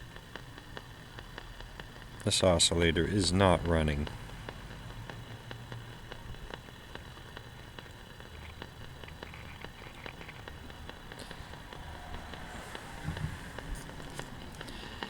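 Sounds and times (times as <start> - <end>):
radio static hiss with crackles: 0.0 - 15.0.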